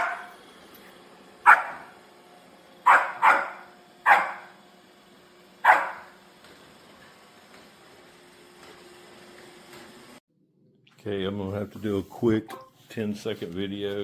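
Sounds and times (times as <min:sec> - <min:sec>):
dog barking: 0:00.0 - 0:00.4, 0:01.4 - 0:02.0, 0:02.8 - 0:04.6, 0:05.6 - 0:06.2.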